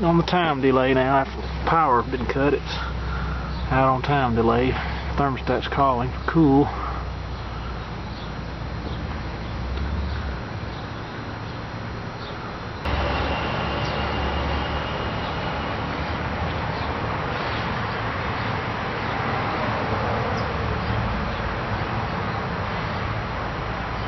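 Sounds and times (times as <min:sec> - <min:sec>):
fan rushing air: 0:12.7 - 0:24.0
heat pump compressor hum: 0:12.8 - 0:17.5.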